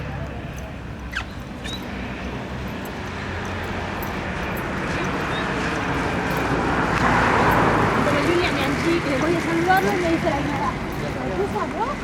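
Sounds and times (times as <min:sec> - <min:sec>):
light aircraft engine and propeller: 0:00.0 - 0:12.0.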